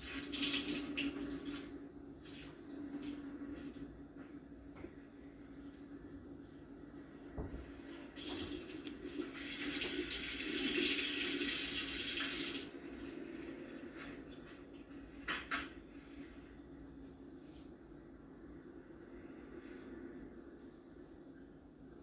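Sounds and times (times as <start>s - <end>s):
tap water running into sink: 8.2s - 12.7s.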